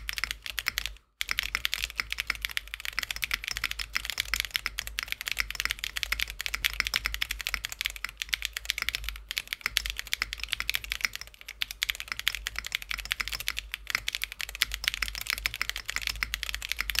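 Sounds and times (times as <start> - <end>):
mechanical keyboard fast typing: 0.0 - 17.0.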